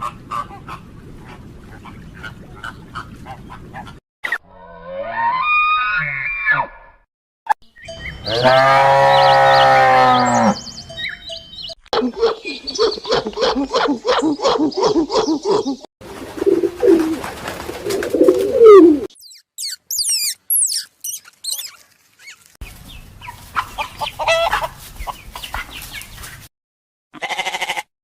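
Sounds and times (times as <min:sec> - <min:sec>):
bird chirping: 0:07.7 - 0:15.8, 0:19.1 - 0:24.3
fast repeated animal calls: 0:19.1 - 0:22.5
fowl calls: 0:23.2 - 0:24.8.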